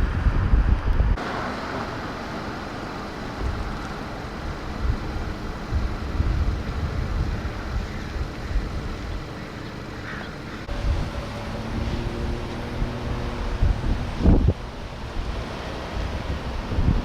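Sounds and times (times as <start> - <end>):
wind buffeting microphone: 0.0 - 1.2, 2.4 - 17.0.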